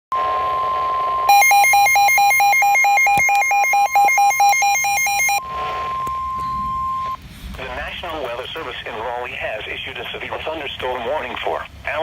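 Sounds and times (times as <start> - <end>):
steady warning tone: 0.1 - 7.8
emergency alert alarm warble: 0.2 - 7.2.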